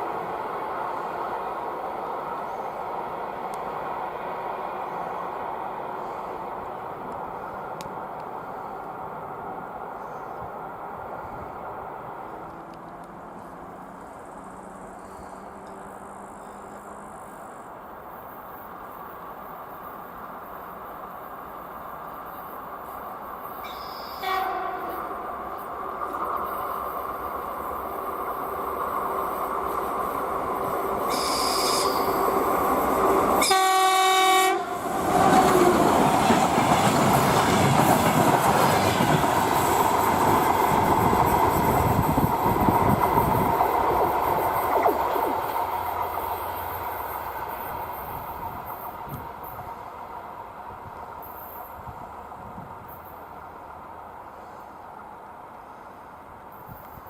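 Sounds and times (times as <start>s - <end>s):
train rushing past: 0.0s - 57.0s
train horn: 23.7s - 25.4s, 31.1s - 32.2s, 33.4s - 34.9s.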